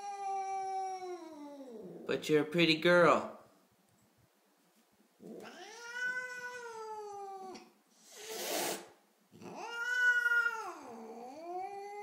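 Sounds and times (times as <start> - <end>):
cat yowling: 0.0 - 2.1, 5.3 - 7.7, 9.4 - 12.0
cat hissing: 5.2 - 11.2.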